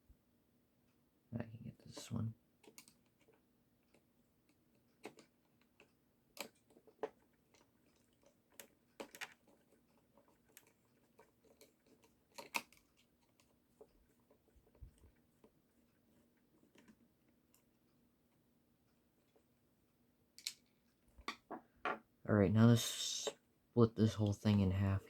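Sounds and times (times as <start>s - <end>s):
screwdriver clicking on plastic: 5.0s - 13.5s.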